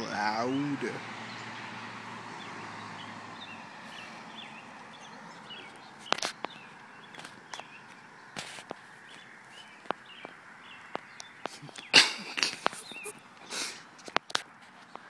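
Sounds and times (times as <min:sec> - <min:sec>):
distant diesel pickup engine: 0:00.0 - 0:15.0
faint bird chirps: 0:12.6 - 0:13.4.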